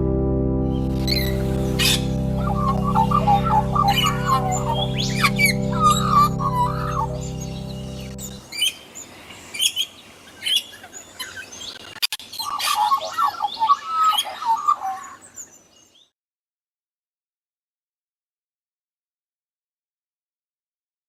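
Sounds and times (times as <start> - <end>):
music: 0.0 - 8.4
bird chirping and singing: 0.8 - 16.1.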